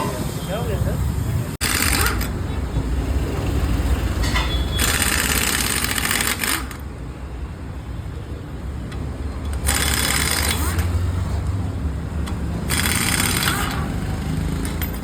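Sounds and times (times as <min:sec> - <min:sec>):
compressed-air tool hissing rattle: 0:04.8 - 0:06.8, 0:09.5 - 0:11.0.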